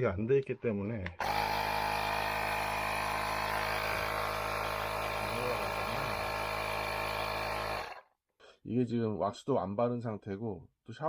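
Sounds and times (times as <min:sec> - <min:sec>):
electric air pump running: 0:01.2 - 0:08.0.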